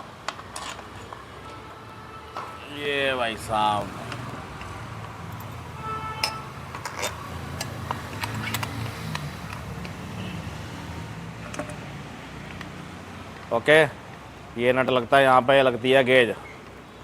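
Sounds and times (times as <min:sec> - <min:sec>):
metal engine parts clicking: 0:00.2 - 0:01.6, 0:06.2 - 0:10.0, 0:11.3 - 0:12.7.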